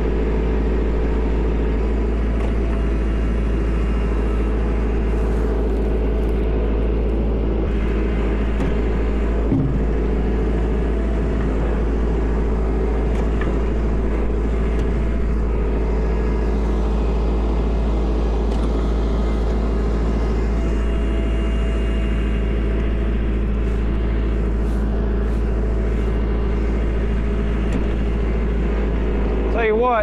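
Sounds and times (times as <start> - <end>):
tractor diesel engine running: 0.0 - 30.0
thump: 9.4 - 10.1.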